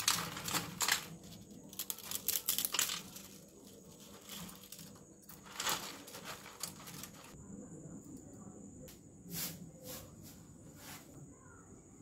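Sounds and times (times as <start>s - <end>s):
rustling and crinkling: 0.0s - 7.4s.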